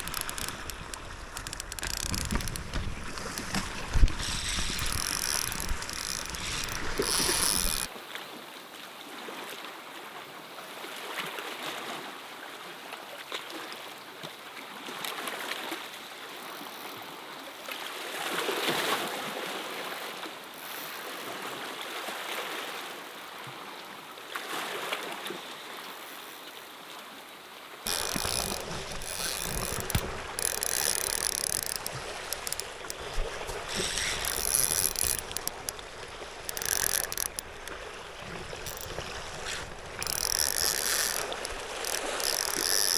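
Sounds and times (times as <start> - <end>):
sharp clicks and knocks: 0.0 - 7.9, 27.9 - 42.9.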